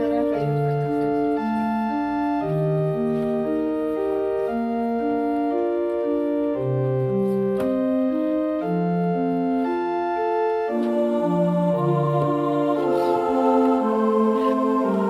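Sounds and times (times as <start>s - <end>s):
gentle organ-like keyboard melody: 0.0s - 15.0s.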